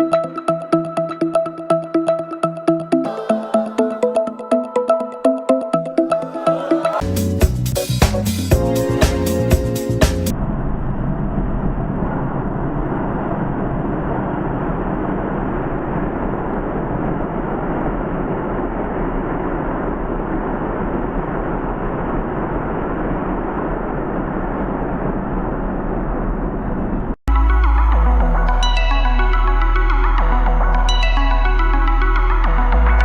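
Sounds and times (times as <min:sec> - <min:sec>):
steady rushing noise: 0:06.2 - 0:27.2
low rumble: 0:07.0 - 0:33.0.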